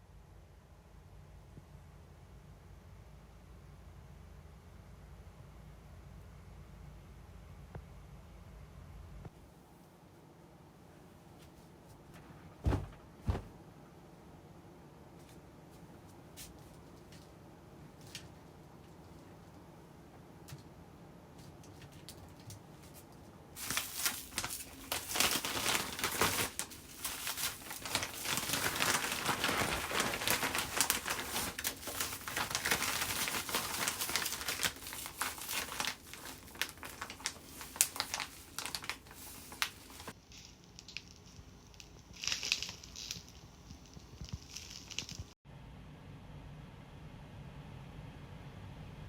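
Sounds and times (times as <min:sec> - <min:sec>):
packaging crinkling: 0:23.6 - 0:45.3.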